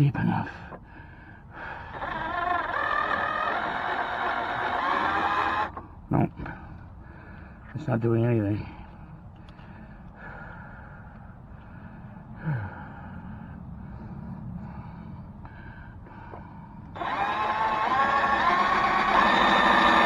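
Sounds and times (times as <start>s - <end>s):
man breathing hard: 0.4s - 2.2s, 6.4s - 7.7s, 8.6s - 17.0s
electric drill running: 1.9s - 5.8s, 17.0s - 20.0s.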